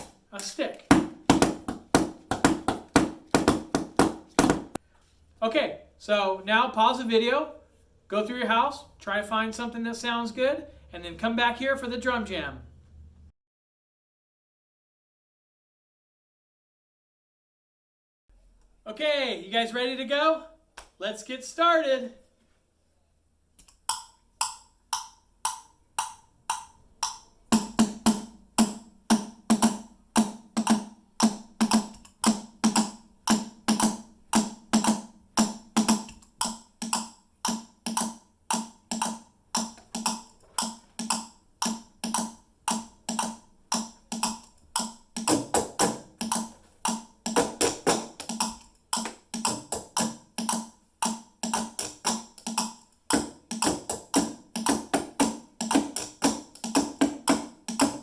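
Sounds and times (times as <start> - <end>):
woody clicking drum pattern: 0.0 - 4.8, 23.6 - 58.0.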